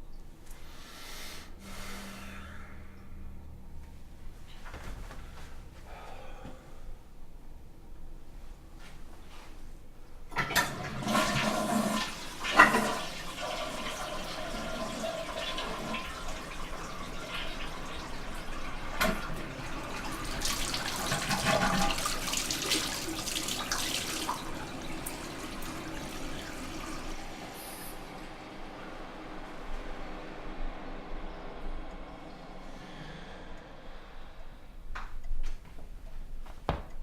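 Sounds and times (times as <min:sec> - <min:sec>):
toilet flushing: 0:10.3 - 0:34.9.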